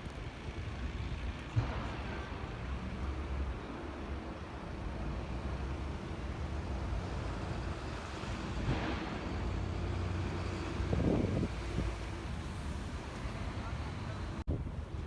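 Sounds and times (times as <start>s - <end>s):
wind buffeting microphone: 10.2s - 13.2s.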